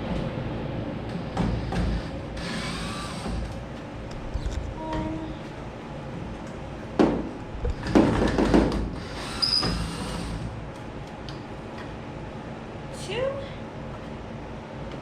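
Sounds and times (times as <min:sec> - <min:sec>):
short high squeak: 0:09.2 - 0:10.0.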